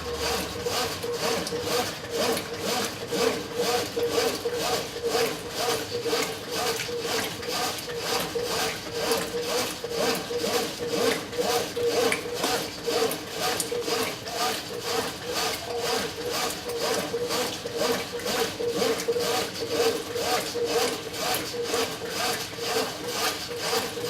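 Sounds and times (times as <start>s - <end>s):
washing machine swishing laundry: 0.0s - 5.4s.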